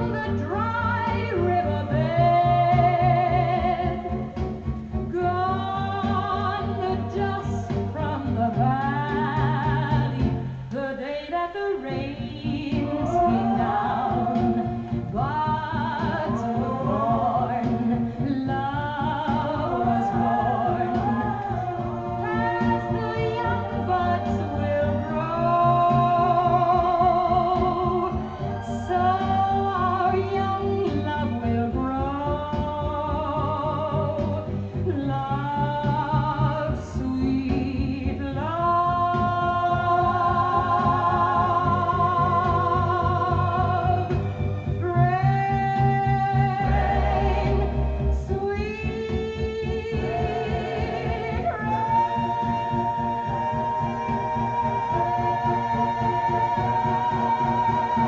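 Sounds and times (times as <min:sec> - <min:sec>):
person singing: 0:05.2 - 0:44.1
orchestral pop accompaniment: 0:11.7 - 0:58.0.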